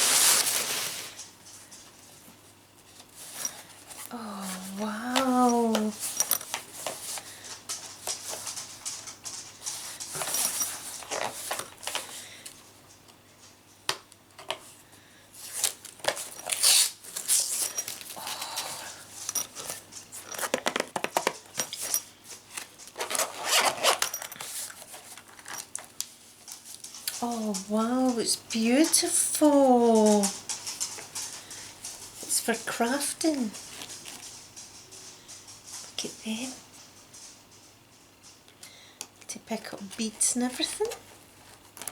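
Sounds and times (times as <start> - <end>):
gift packaging rustling and tearing: 0.0 - 1.2, 15.4 - 26.0.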